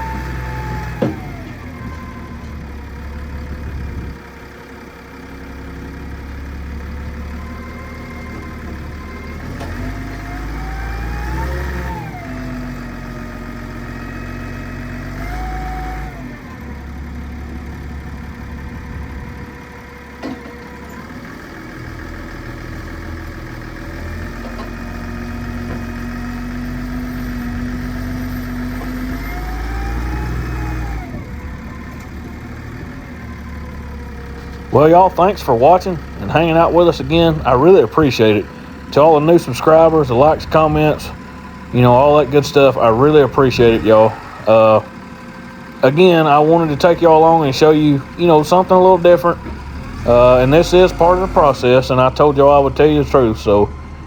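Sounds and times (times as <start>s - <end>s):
wheel loader engine revving: 0.0s - 54.0s.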